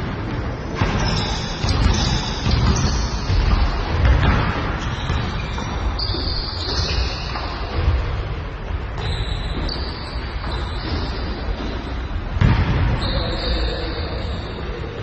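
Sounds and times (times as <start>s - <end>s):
basketball bouncing: 0.0s - 8.4s, 9.0s - 13.0s
sneakers squeaking on court floor: 0.0s - 15.0s.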